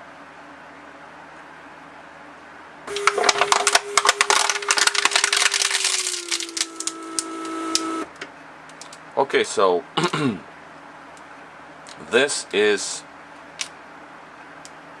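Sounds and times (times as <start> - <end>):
plastic bottle crackling: 2.9 - 8.1
vacuum pump humming: 2.9 - 8.2.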